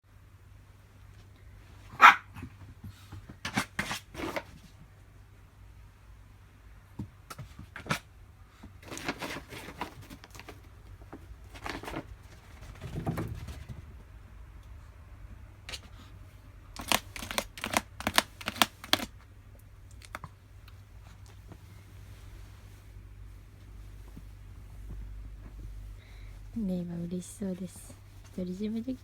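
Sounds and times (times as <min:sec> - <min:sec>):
small dog barking: 0:01.9 - 0:02.5.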